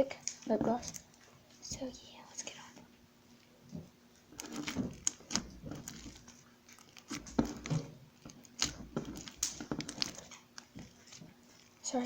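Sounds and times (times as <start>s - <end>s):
slime squishing with sticky pops: 3.3s - 12.0s.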